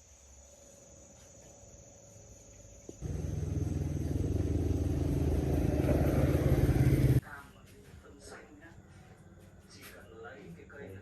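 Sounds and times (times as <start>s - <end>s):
faint insect chirping: 0.0s - 11.0s
diesel engine running: 3.0s - 7.2s.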